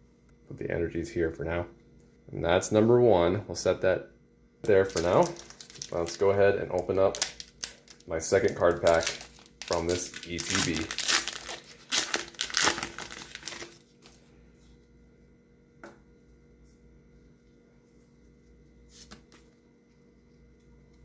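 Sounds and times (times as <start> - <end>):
foil wrapper crinkling and tearing: 4.7 - 14.2.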